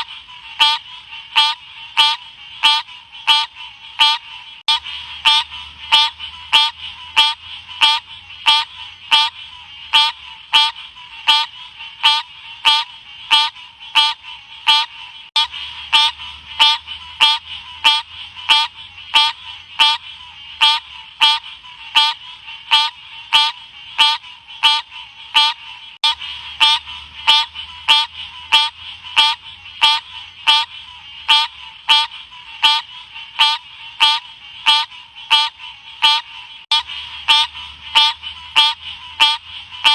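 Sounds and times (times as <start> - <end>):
frog chirping calls: 0.0 - 39.9.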